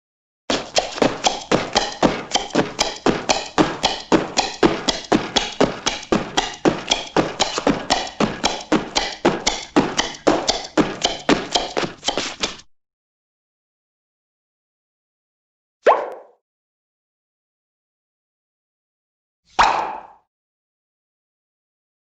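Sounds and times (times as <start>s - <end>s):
fast sharp taps: 0.5s - 12.7s.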